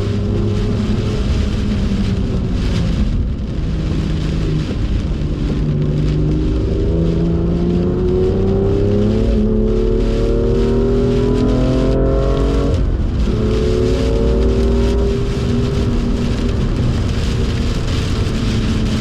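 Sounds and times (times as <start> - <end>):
car engine accelerating hard: 0.0 - 19.0
rain and tyre spray hiss: 0.0 - 19.0.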